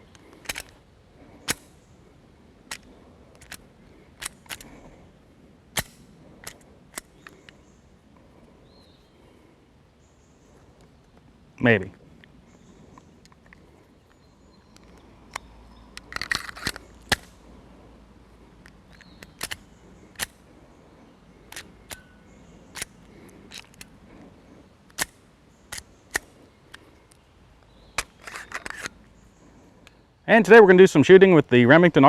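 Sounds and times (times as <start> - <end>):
handling clicks and knocks: 2.6 - 4.8, 27.9 - 29.0.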